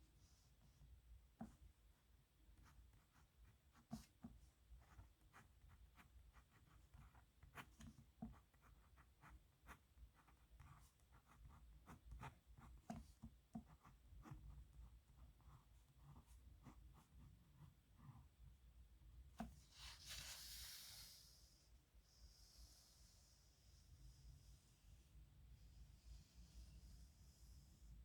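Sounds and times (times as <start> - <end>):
pen scratching on paper: 4.8 - 13.0, 13.6 - 18.2.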